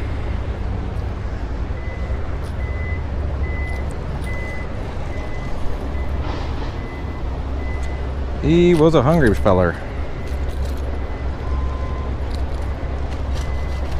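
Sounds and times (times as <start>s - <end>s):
vehicle backup alarm beeping: 0.0s - 0.6s, 1.7s - 13.9s
low rumble: 4.8s - 8.4s.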